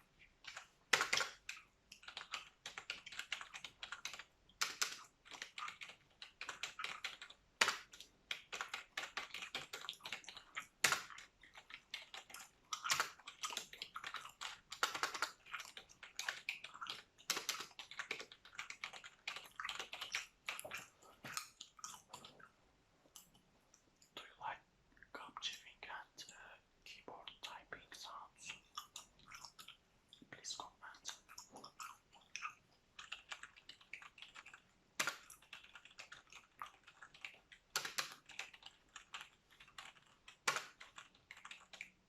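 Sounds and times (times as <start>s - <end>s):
computer keyboard typing: 0.4s - 22.3s, 31.0s - 42.0s
wet gum chewing: 15.3s - 17.3s, 17.9s - 24.1s, 28.4s - 30.3s, 30.9s - 37.8s.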